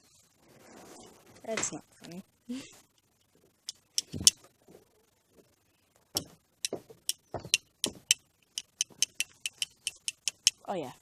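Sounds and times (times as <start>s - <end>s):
sharp clicks and light knocks: 3.0s - 4.5s, 6.1s - 10.6s.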